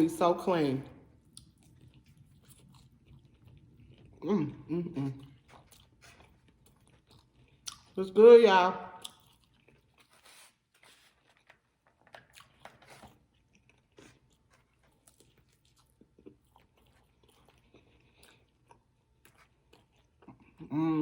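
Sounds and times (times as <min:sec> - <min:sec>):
chewing and crunching food: 0:00.0 - 0:21.0.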